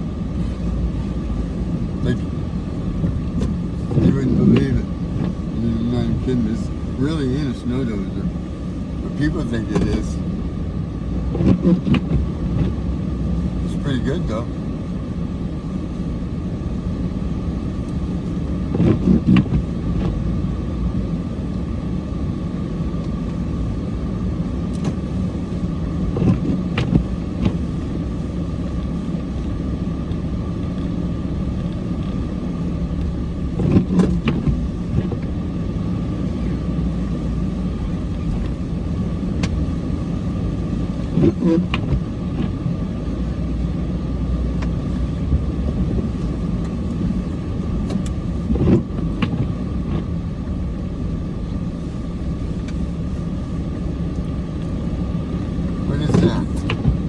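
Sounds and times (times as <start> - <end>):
thumps and clunks: 9.6 - 10.1, 18.7 - 20.2, 26.2 - 27.7, 33.0 - 35.3, 39.3 - 39.8, 55.9 - 57.0.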